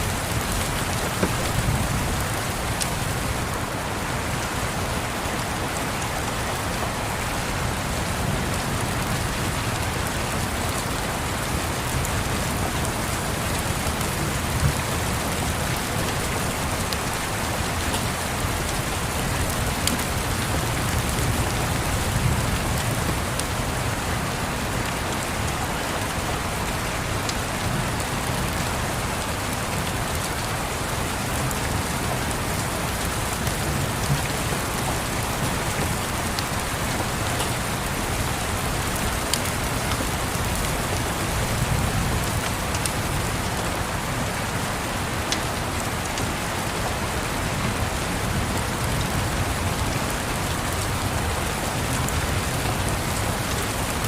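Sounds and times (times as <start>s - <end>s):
log fire crackling: 0.0s - 3.3s
steady rain falling: 0.0s - 54.0s.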